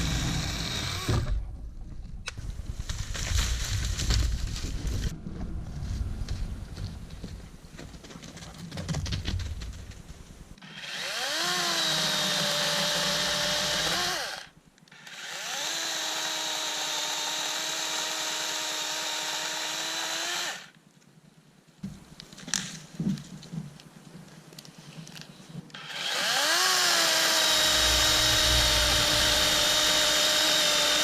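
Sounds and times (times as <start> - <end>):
electric chainsaw whining: 0.0 - 1.4, 10.6 - 20.7, 25.8 - 31.0
rustling: 1.8 - 10.6.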